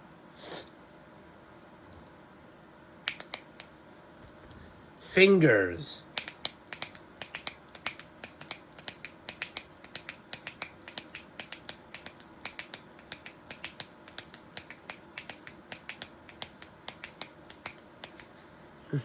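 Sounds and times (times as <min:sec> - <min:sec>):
fingers tapping hoofbeat clicks: 0:03.1 - 0:03.7, 0:06.1 - 0:18.3.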